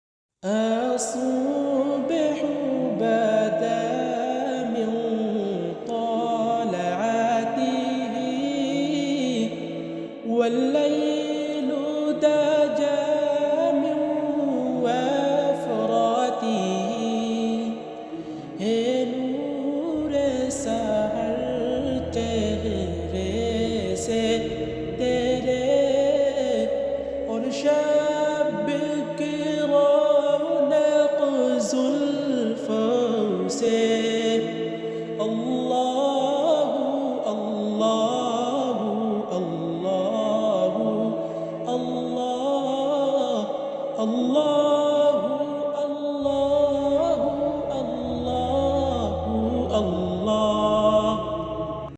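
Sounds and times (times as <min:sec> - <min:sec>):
person singing devotional song: 0:00.4 - 0:51.9
low drone: 0:17.6 - 0:29.0, 0:46.2 - 0:51.9.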